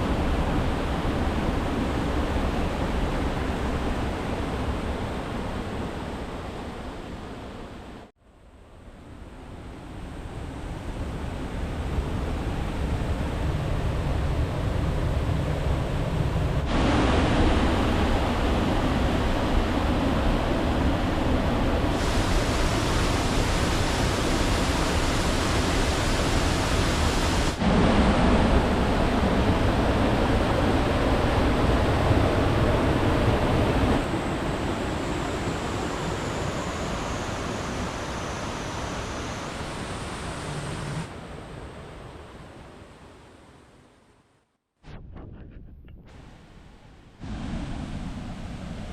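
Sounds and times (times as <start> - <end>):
waterfall rushing: 22.0 - 28.5.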